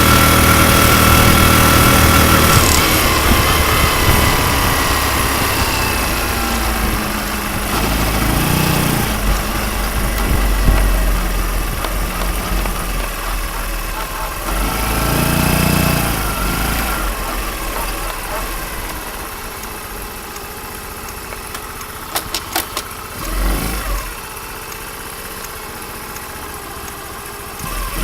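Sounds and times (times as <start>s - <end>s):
motorcycle engine running: 0.0s - 28.0s.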